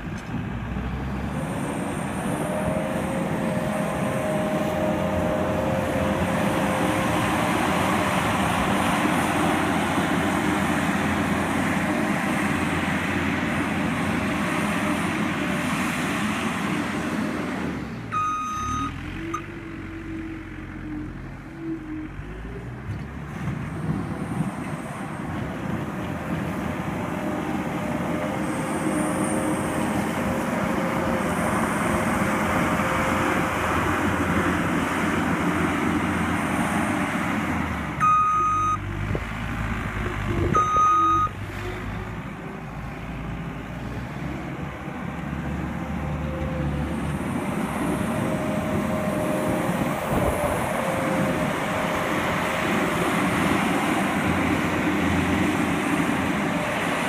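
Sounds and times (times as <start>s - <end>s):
loader engine running: 0.0s - 57.0s
backup alarm beeps: 18.1s - 19.5s, 38.0s - 38.8s, 40.6s - 41.3s.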